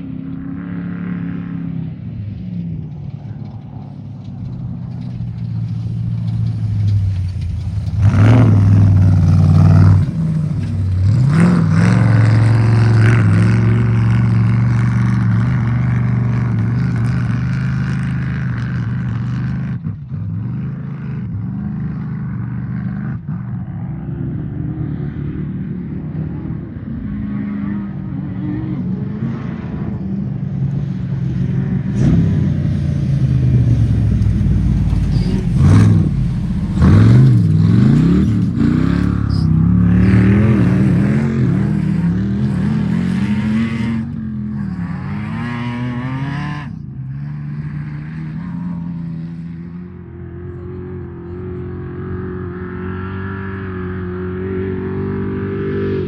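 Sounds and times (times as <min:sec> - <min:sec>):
race vehicle engine revving: 0:04.5 - 0:30.1, 0:30.8 - 0:56.0.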